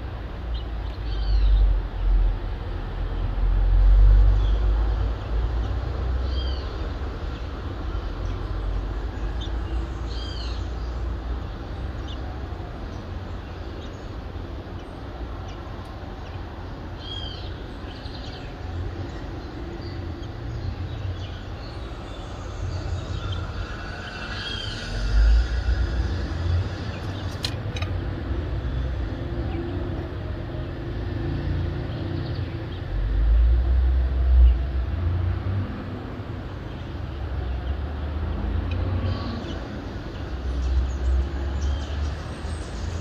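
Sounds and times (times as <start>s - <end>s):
distant city traffic rumble: 0.0s - 43.0s
bird chirps: 17.0s - 27.5s.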